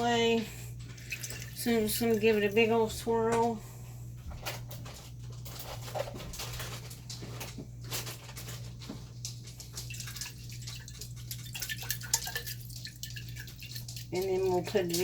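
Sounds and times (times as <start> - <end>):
liquid sloshing in glass jar: 0.8 - 2.7, 8.4 - 15.0.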